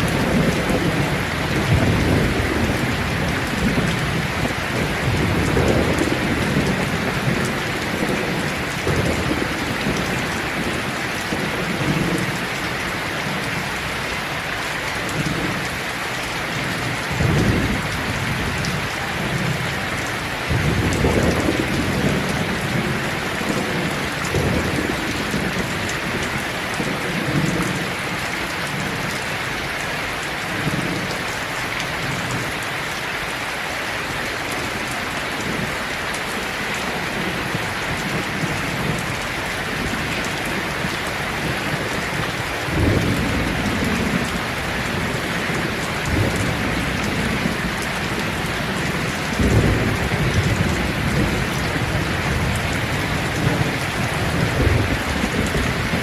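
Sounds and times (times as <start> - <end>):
rain falling on leaves: 0.0 - 56.0.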